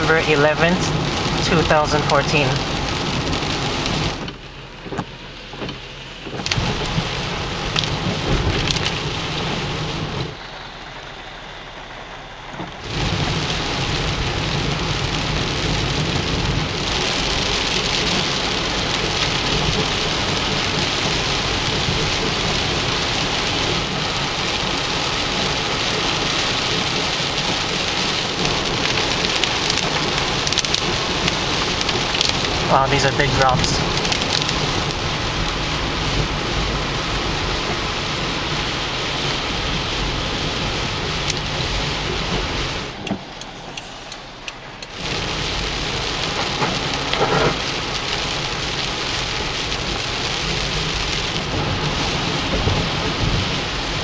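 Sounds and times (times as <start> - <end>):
heavy rain hissing: 0.0 - 54.0.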